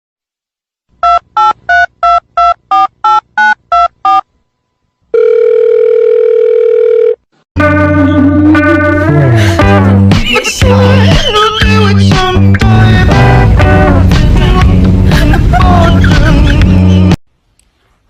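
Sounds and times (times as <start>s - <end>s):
telephone keypad beeps: 1.0s - 4.2s
long telephone tone: 5.1s - 7.3s
music: 7.6s - 17.2s.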